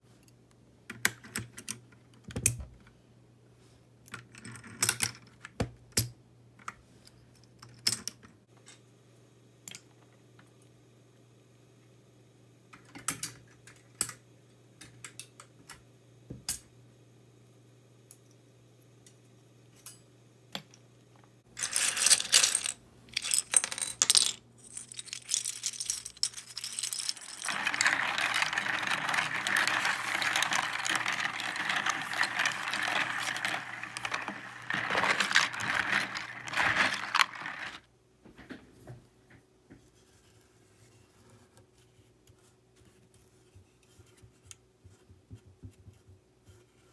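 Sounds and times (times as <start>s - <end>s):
plastic keycaps clattering: 21.6s - 37.8s.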